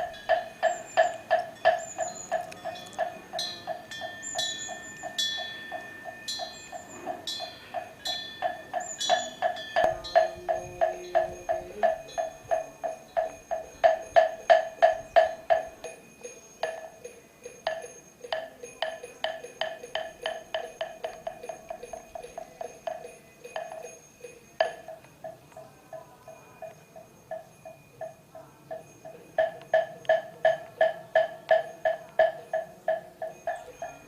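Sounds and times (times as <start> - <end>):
wooden block knocking rhythmically: 0.0 - 34.0.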